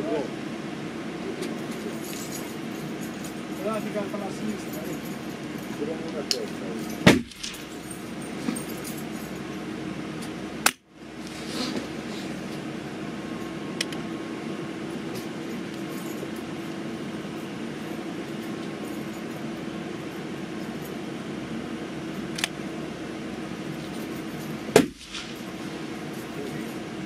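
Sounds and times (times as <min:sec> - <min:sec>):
steady low hum: 0:00.0 - 0:27.0
rifle shot: 0:24.8 - 0:25.4.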